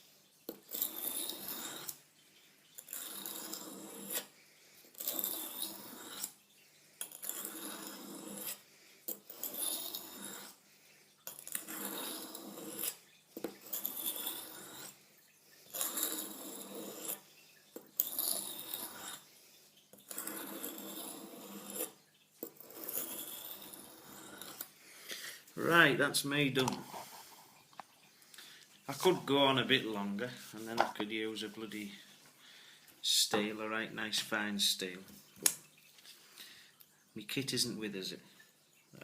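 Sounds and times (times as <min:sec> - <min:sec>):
knife rasping on sharpening stone: 0:00.6 - 0:02.0, 0:02.8 - 0:04.3, 0:04.9 - 0:06.4, 0:07.0 - 0:10.6, 0:11.3 - 0:15.0, 0:15.7 - 0:17.3, 0:17.9 - 0:19.3, 0:20.0 - 0:24.7.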